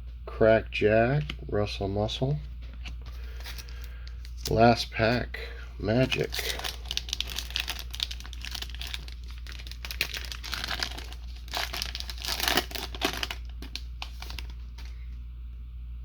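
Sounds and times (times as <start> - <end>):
plastic wrapper tearing and crinkling: 6.0 - 14.9.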